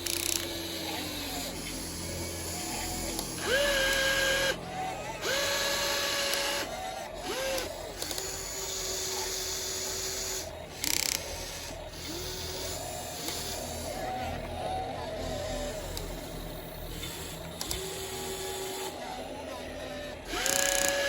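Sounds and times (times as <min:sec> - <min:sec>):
small electric motors whining: 0:00.0 - 0:21.0.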